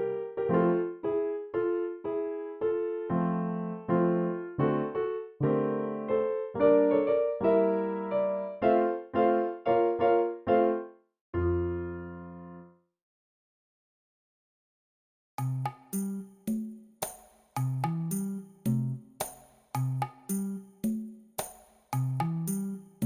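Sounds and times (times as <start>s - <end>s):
electric piano melody: 0.0s - 12.8s.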